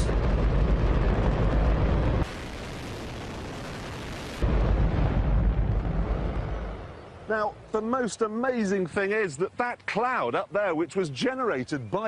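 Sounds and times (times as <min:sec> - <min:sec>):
rocket engine roaring: 0:00.0 - 0:07.2.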